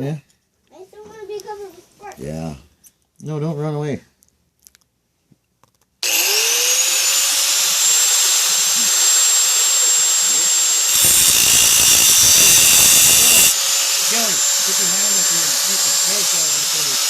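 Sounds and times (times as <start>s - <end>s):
cut-off wheel whine: 6.0s - 17.0s
wheel grinding steel: 6.0s - 17.0s.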